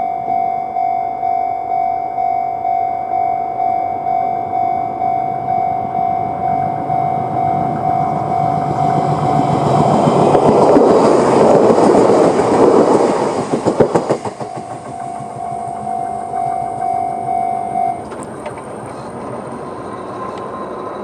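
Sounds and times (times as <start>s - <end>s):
crossing warning bell ringing: 0.0s - 12.9s, 13.9s - 21.0s
train passing: 0.0s - 21.0s
wheel clicks over rail joints: 9.0s - 19.6s.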